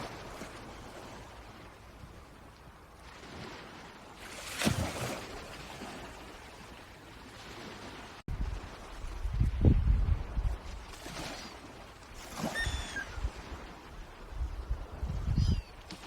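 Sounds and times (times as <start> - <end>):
wind and water rushing: 0.0 - 16.0
wind on microphone rumble: 8.2 - 11.0, 12.6 - 16.0.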